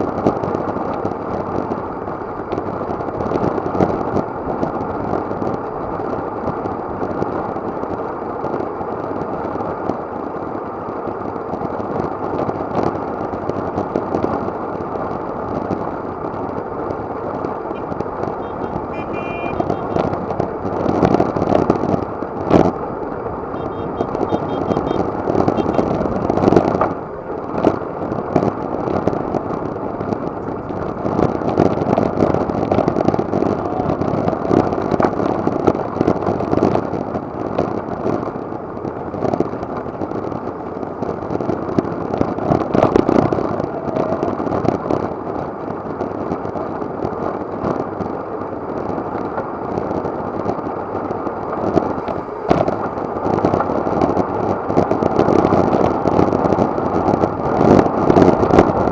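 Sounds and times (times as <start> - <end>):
crackling pops: 0.0 - 58.9
road and traffic noise: 0.0 - 58.9
wind buffeting microphone: 12.1 - 46.5, 48.8 - 58.9.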